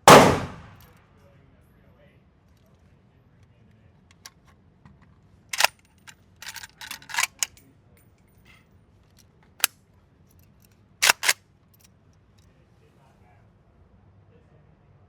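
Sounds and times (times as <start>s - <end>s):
sharp clicks and knocks: 6.4s - 7.5s.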